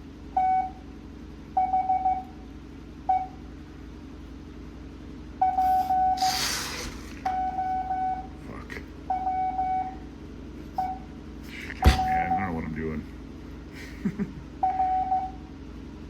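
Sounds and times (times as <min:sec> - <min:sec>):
morse code tone: 0:01.6 - 0:02.3, 0:11.8 - 0:12.9
burst of hiss: 0:05.8 - 0:07.3.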